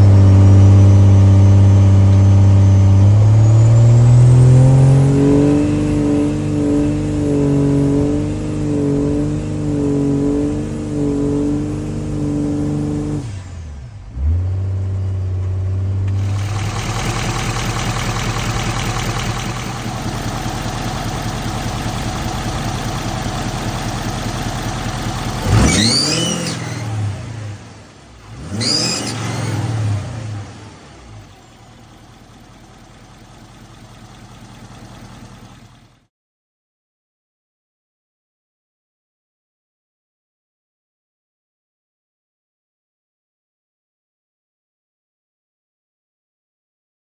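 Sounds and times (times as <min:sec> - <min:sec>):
high-pitched engine screech: 0:00.0 - 0:07.0, 0:16.1 - 0:27.5, 0:28.3 - 0:30.4
diesel engine revving: 0:00.0 - 0:36.0.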